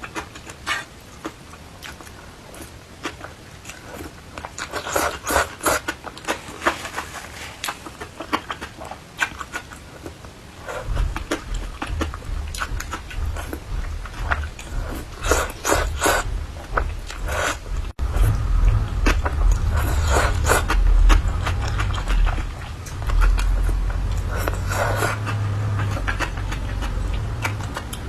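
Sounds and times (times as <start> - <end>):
person chewing and crunching food: 0.0 - 28.0
steady low rumble: 10.7 - 28.0.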